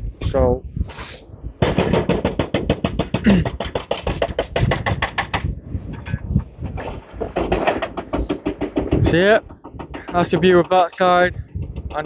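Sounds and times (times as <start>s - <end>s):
hydraulic breaker hammering concrete: 1.6s - 5.5s, 7.2s - 12.0s.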